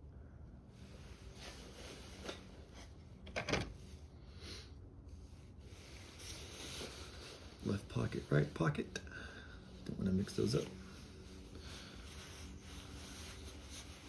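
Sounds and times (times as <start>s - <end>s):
handling noises on car parts: 1.1s - 4.1s.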